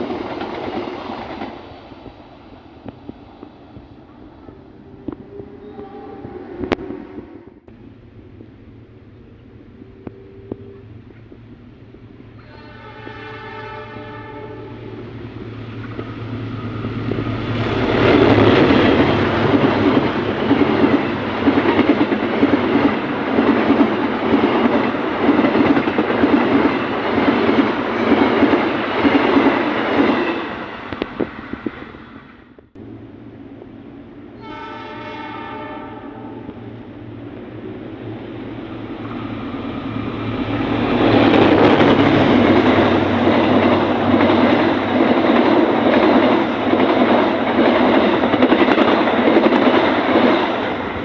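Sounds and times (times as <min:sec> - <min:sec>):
train horn: 0:04.4 - 0:07.6, 0:09.3 - 0:11.1, 0:12.4 - 0:15.5, 0:34.4 - 0:36.8
train wheels clattering: 0:15.4 - 0:31.9, 0:38.9 - 0:51.0.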